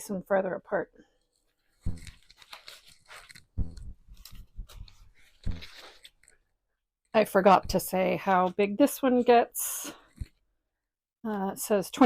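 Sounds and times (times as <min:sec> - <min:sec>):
wrapping crinkling and rustling: 0:01.4 - 0:06.4.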